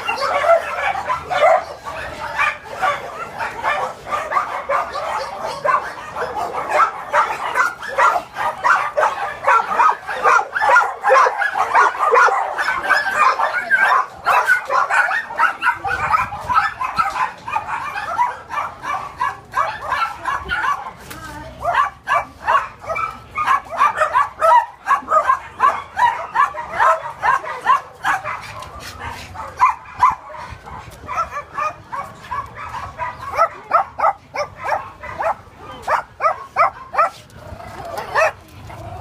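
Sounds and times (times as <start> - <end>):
dogs barking and yipping: 0.0 - 39.0.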